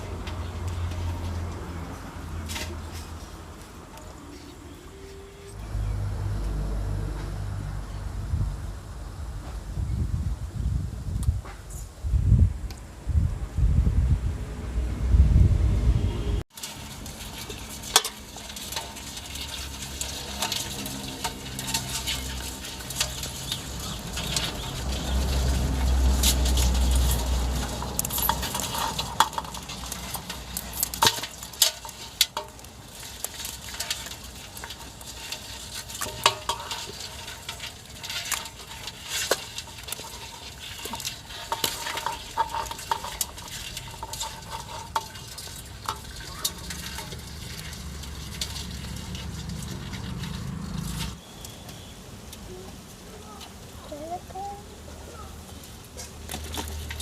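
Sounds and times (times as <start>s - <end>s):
metal spoon stirring in a pot: 0.0s - 4.7s, 16.5s - 52.4s, 55.4s - 57.0s
low rumble: 5.4s - 11.3s, 12.1s - 16.5s.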